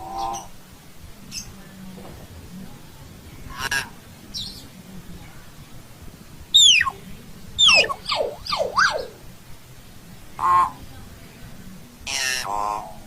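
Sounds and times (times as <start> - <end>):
myna whistling: 6.6 - 7.0, 7.6 - 9.2
short harsh bird call: 6.6 - 7.0, 7.6 - 9.2.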